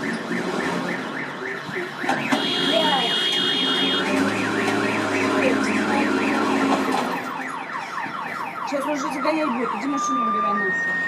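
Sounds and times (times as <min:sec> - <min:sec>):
electronic siren warbling: 0:03.9 - 0:11.0.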